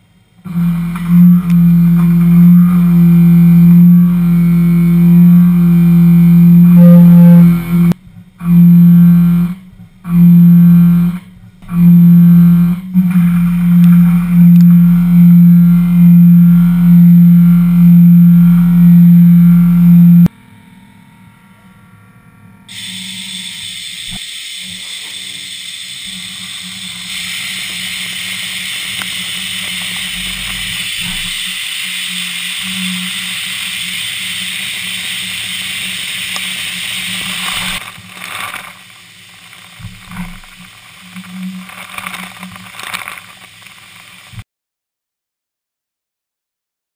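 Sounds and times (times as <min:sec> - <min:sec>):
distorted electric guitar music: 0:00.0 - 0:44.4
milling machine hissing: 0:22.7 - 0:41.7
coolant flowing: 0:22.7 - 0:44.4.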